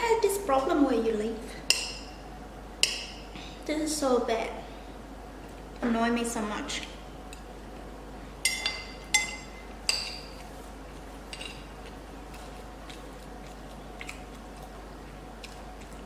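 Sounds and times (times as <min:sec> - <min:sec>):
cutlery clinking against a dish: 0:08.5 - 0:10.4, 0:11.3 - 0:11.7.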